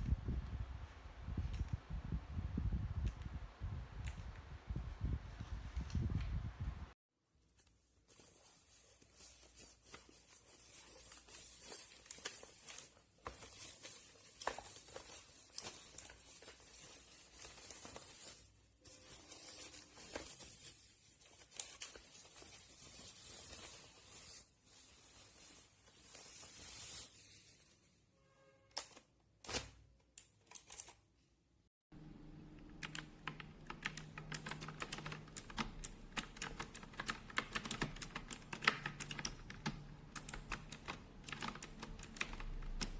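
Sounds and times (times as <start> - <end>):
mechanical keyboard clicks: 30.4 - 31.0, 32.6 - 42.9.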